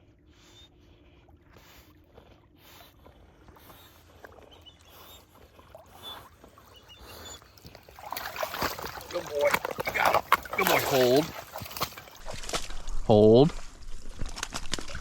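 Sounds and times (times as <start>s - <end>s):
water sloshing around kayak: 0.9s - 15.0s
paddle strokes: 2.6s - 12.7s
small splashes and drips: 5.6s - 12.8s.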